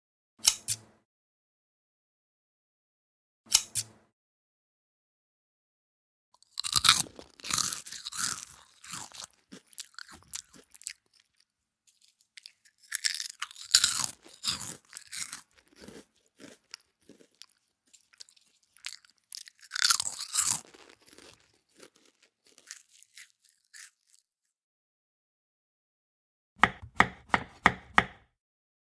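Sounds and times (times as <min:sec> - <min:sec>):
crisp food being chewed: 0:06.4 - 0:24.4.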